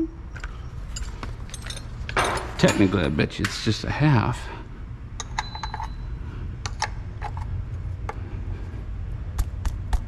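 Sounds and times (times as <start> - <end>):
steady low hum: 0.0 - 10.0
metallic clicks of hand tools: 5.2 - 6.0.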